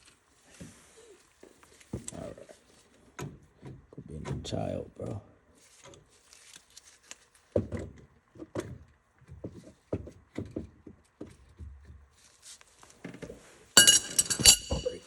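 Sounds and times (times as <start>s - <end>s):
hand tools knocking and clunking: 13.8s - 15.0s.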